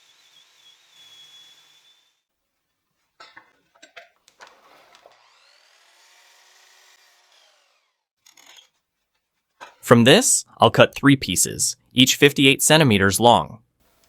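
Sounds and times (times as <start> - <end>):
table saw winding down: 0.0 - 2.2, 4.6 - 8.7.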